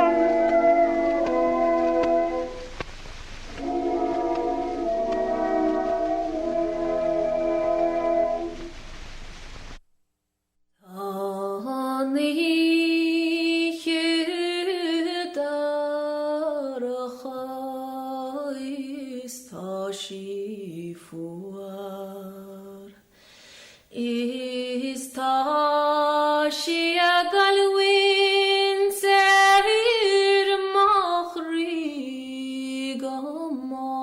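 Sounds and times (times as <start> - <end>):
woman singing unaccompanied: 0.0 - 2.6, 10.8 - 23.0, 23.9 - 34.0.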